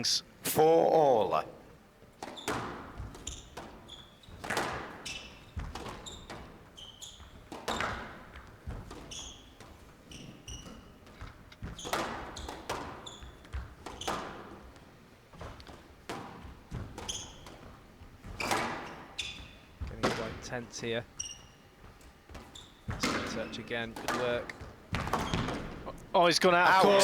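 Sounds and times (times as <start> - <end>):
shoes squeaking on court floor: 1.9 - 27.0
squash ball cracking off rackets: 2.1 - 20.4, 21.9 - 26.0
ball thudding against walls: 2.1 - 20.7, 21.7 - 26.1.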